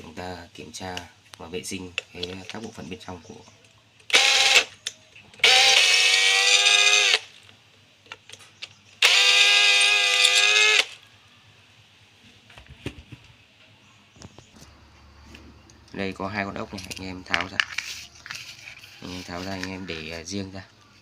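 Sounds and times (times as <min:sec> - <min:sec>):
power screwdriver motor whining: 0:04.1 - 0:07.4, 0:09.0 - 0:11.0.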